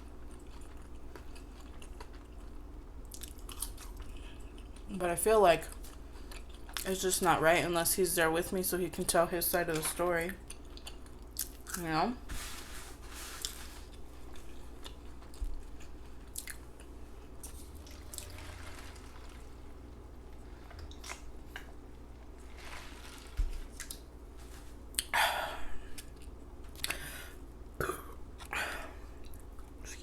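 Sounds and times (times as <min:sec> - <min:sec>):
person chewing food: 0:00.1 - 0:04.9, 0:05.7 - 0:06.8, 0:10.4 - 0:11.8, 0:13.4 - 0:25.2.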